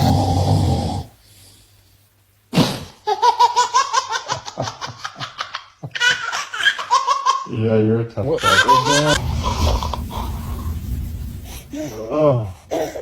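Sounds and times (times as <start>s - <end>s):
baby giggling: 3.0s - 7.5s, 8.4s - 9.2s.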